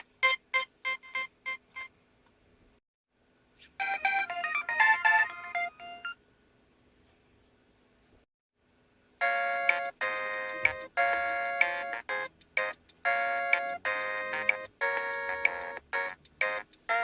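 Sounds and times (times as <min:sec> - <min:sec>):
ringtone melody: 0:00.0 - 0:01.9, 0:03.8 - 0:06.2, 0:09.2 - 0:17.0.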